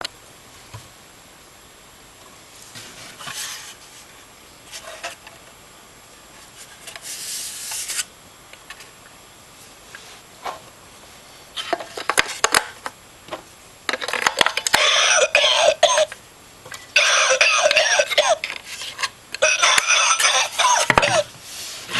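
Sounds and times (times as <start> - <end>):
electronic recorded coughing: 14.7 - 16.2, 16.9 - 18.6, 19.4 - 21.3.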